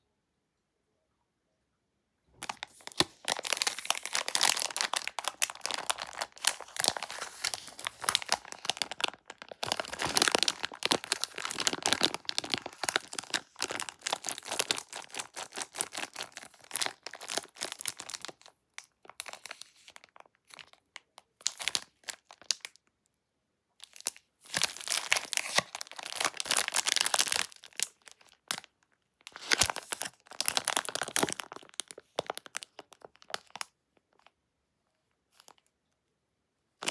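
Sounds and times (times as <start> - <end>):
plastic packaging crinkling: 2.4 - 20.8, 23.8 - 28.7, 29.3 - 34.3.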